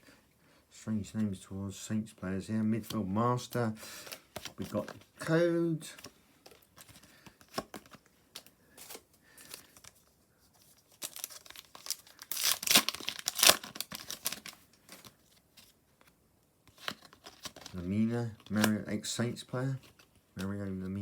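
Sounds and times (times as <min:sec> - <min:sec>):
wrapper crinkling: 0:10.6 - 0:15.4, 0:16.7 - 0:18.7
foil pack tearing: 0:11.0 - 0:14.6.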